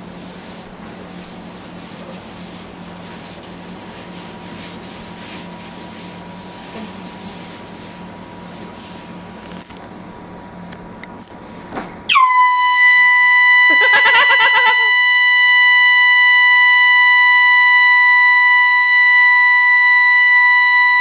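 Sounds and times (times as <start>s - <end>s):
air horn blast: 12.1s - 21.0s
person crying out: 13.7s - 14.9s.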